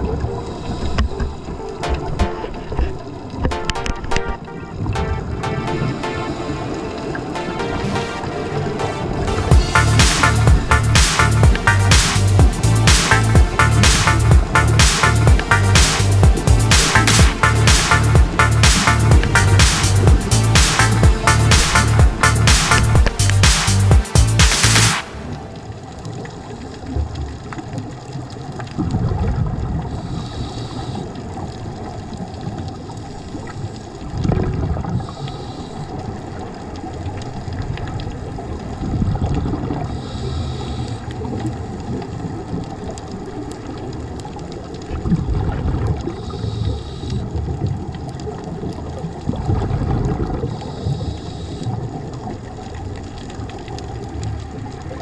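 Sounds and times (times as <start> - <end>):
underwater wash: 0.0 - 55.0
bubbles burbling from regulator: 41.3 - 46.4, 47.4 - 50.6.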